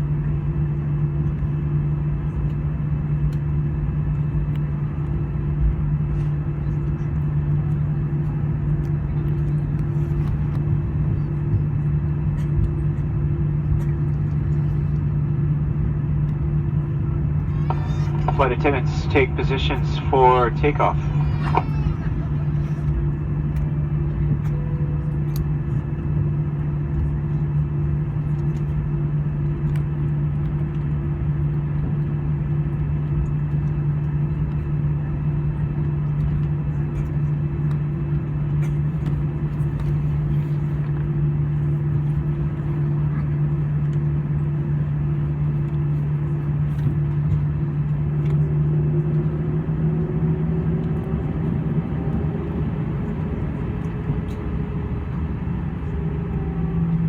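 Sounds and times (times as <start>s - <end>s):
jet engines humming: 15.1s - 25.2s, 47.0s - 57.0s
rushing cabin noise: 17.4s - 23.3s.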